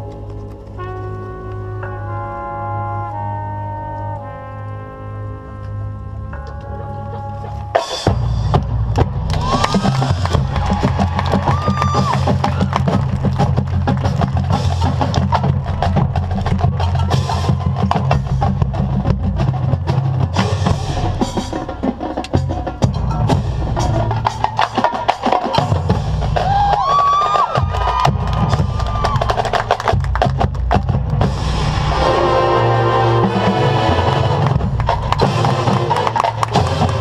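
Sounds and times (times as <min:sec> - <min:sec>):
low brass tones: 0:00.0 - 0:26.4, 0:31.1 - 0:37.0
marching band percussion: 0:06.5 - 0:37.0.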